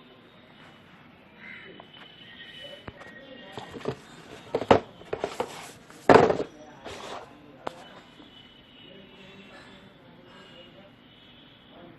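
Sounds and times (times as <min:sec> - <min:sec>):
handling knocks and rustles: 0:03.6 - 0:07.8.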